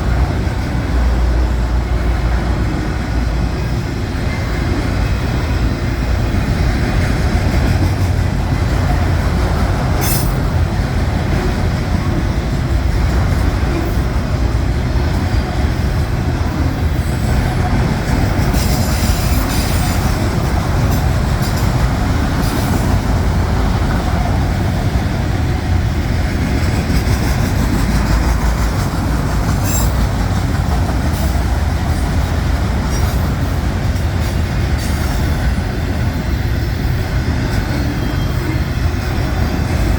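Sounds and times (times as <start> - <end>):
train wheels rumbling on rail: 0.0 - 39.9.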